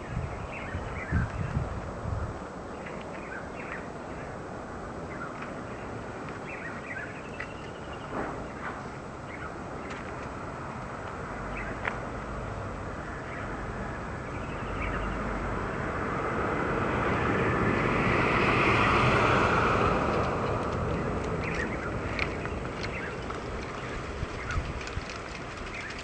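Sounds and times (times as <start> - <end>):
breeze rushing through foliage: 0.0 - 26.0
bird chirps: 6.4 - 8.7, 14.2 - 15.3.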